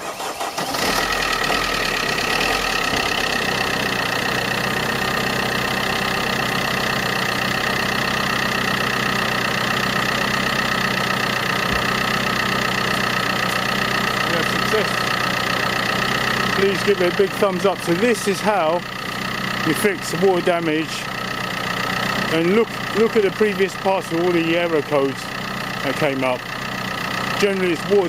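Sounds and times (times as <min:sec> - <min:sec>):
diesel engine starting and idling: 0:00.0 - 0:28.0.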